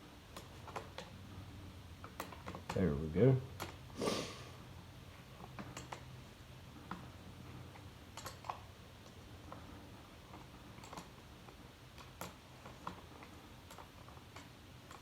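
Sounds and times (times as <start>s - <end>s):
small metal wrench clicks: 5.6s - 6.0s, 8.2s - 8.6s.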